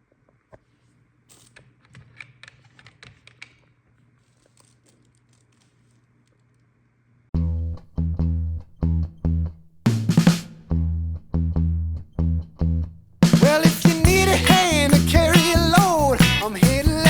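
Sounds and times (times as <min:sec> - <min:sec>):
music with heavy drum and bass: 0:13.2 - 0:17.0.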